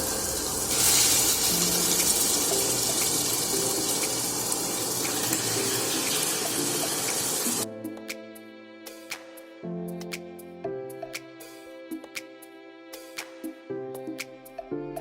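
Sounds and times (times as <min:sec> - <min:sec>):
chicken sizzling in pot: 0:00.0 - 0:07.6
violin background music: 0:00.0 - 0:15.0.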